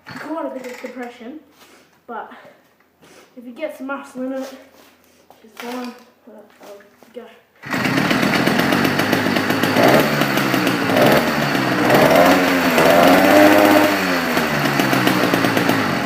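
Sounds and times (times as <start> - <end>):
two-stroke engine revving: 7.6 - 16.0.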